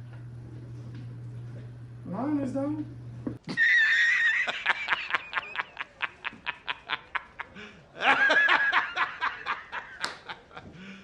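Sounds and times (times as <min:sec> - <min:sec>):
high-pitched laughter: 0:03.5 - 0:10.5.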